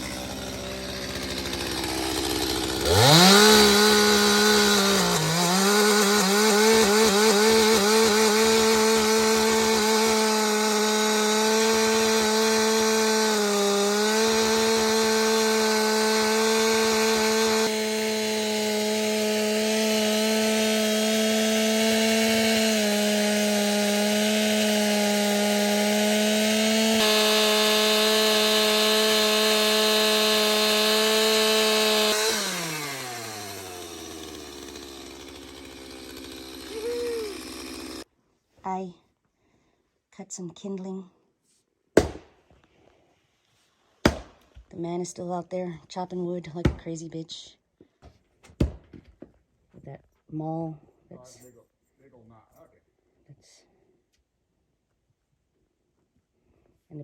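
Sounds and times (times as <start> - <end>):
chainsaw cutting wood: 0.0 - 38.1, 42.0 - 42.5, 44.0 - 44.8, 46.5 - 47.1, 48.5 - 49.1.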